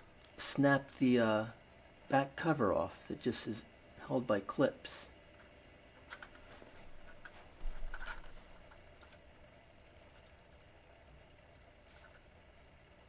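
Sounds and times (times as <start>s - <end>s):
parts clattering: 6.0s - 9.2s.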